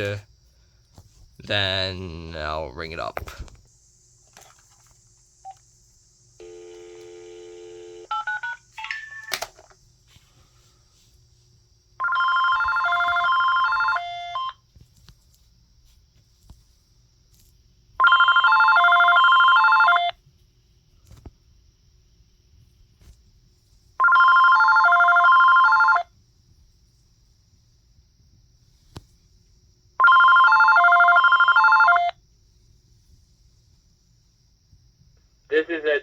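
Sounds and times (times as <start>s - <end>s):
cordless phone ringing: 6.4s - 9.7s, 12.0s - 14.6s, 18.0s - 20.1s, 24.0s - 26.1s, 30.0s - 32.2s
telephone dial tone: 6.4s - 9.7s, 12.0s - 14.6s, 18.0s - 20.1s, 24.0s - 26.0s, 30.0s - 32.2s.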